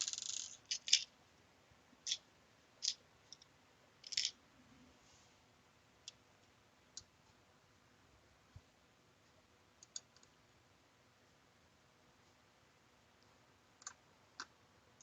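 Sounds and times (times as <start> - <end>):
screws and parts clicking: 0.0 - 1.1, 4.0 - 4.3.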